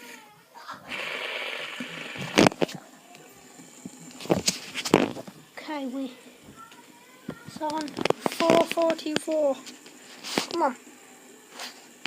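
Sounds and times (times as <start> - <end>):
fidget spinner clicks and knocks: 6.7 - 10.7.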